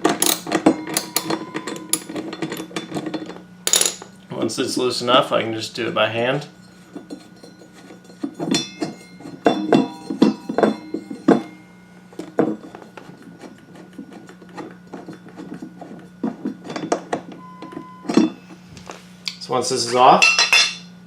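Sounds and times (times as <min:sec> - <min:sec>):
metallic clinks and knocks: 0:00.0 - 0:04.2, 0:06.5 - 0:13.0.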